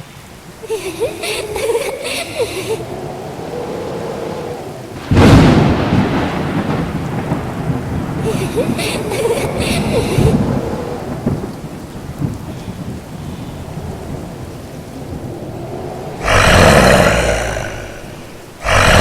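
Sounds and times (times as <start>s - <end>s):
rain: 0.0s - 19.0s
thunder rumbling: 0.5s - 19.0s.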